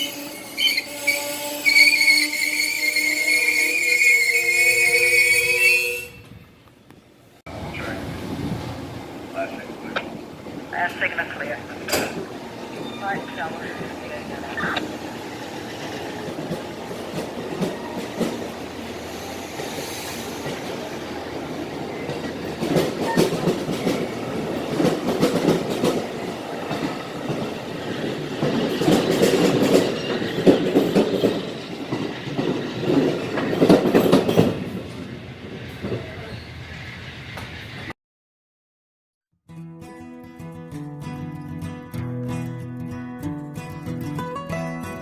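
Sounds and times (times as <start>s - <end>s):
train wheels clicking on rails: 7.8s - 37.9s.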